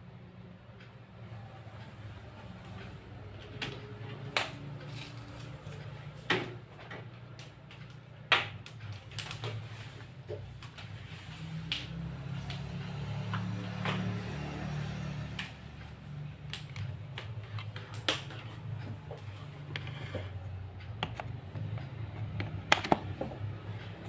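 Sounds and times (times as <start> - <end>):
sharp clicks and knocks: 15.4 - 24.0.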